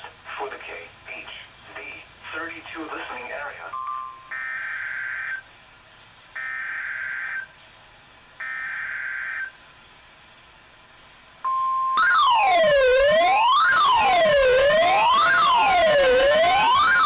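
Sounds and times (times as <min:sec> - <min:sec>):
steady warning alarm tone: 0:12.0 - 0:17.0
sweeping siren-like tone: 0:12.0 - 0:17.0
warbling digital data tones: 0:12.0 - 0:17.0.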